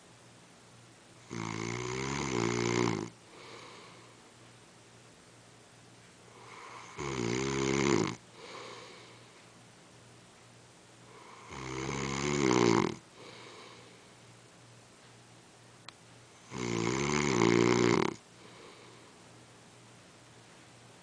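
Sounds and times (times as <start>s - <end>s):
man snoring: 1.2s - 4.0s, 6.3s - 9.1s, 11.1s - 13.9s, 16.4s - 18.6s
soft breath: 3.2s - 4.4s, 8.3s - 9.6s, 13.1s - 14.2s, 18.3s - 19.3s.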